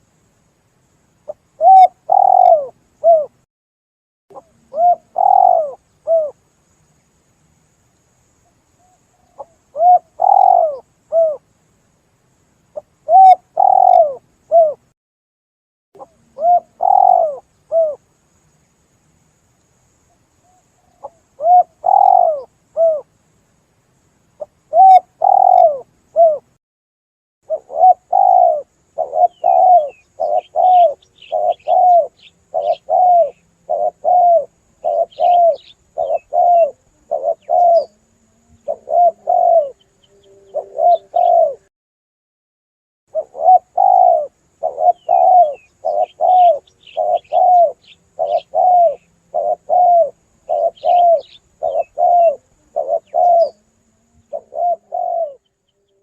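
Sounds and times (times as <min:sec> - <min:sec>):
small bird chirping: 0:01.2 - 0:03.4, 0:04.3 - 0:07.0, 0:07.9 - 0:11.5, 0:12.7 - 0:14.8, 0:16.0 - 0:18.8, 0:19.9 - 0:23.1, 0:24.3 - 0:26.6, 0:27.5 - 0:41.7, 0:43.1 - 0:56.0
dove cooing: 0:01.3 - 0:03.4, 0:04.3 - 0:06.4, 0:09.2 - 0:11.4, 0:12.8 - 0:14.8, 0:16.0 - 0:18.0, 0:20.8 - 0:23.1, 0:24.4 - 0:26.5, 0:27.5 - 0:41.7, 0:43.1 - 0:56.0.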